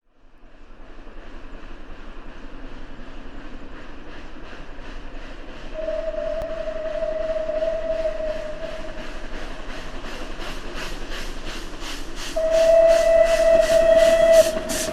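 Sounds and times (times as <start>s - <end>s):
steam locomotive chuffing: 0.2s - 14.9s
steam whistle: 5.8s - 9.0s, 12.4s - 14.9s.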